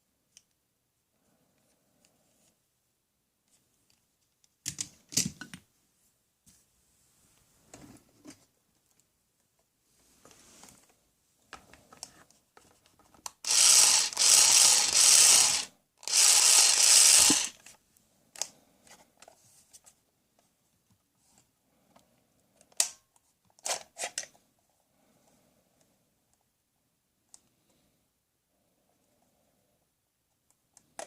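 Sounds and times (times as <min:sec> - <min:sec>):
plastic toy tool ratcheting: 0:13.2 - 0:17.7.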